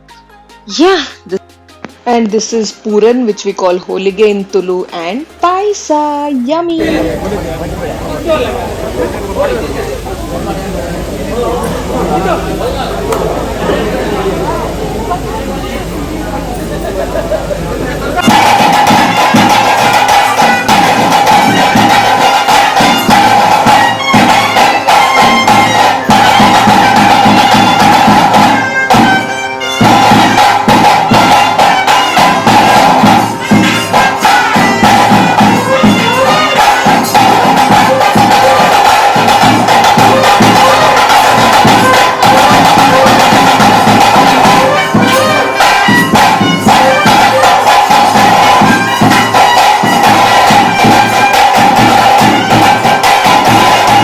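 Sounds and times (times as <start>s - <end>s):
dense drumming: 4.1s - 54.0s
wind instrument high note: 18.2s - 54.0s.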